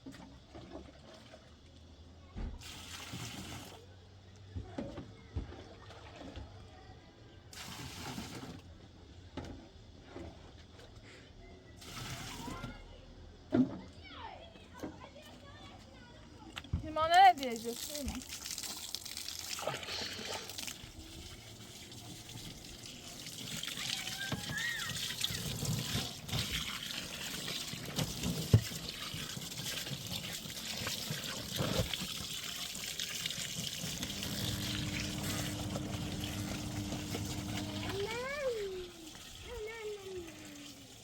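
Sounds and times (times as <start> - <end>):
water running and splashing: 17.0 - 41.0
steady hum: 34.0 - 38.1.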